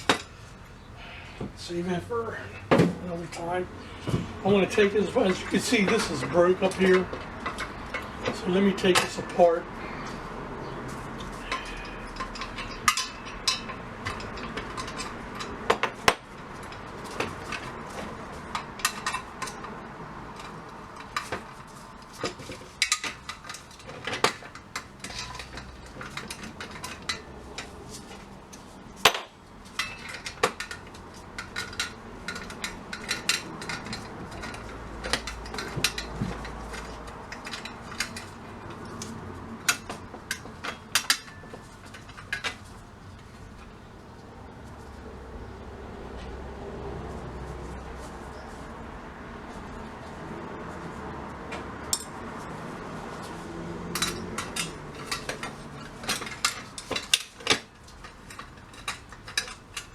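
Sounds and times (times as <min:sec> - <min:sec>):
small metal parts clinking: 0:10.9 - 0:43.7, 0:53.2 - 0:59.9.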